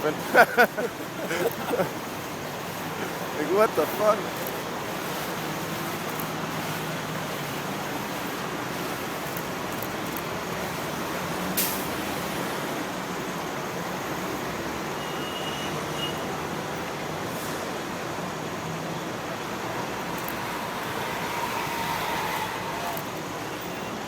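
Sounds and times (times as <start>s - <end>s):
passing vehicles traffic: 0.0s - 24.0s
short sharp click: 11.6s - 11.9s.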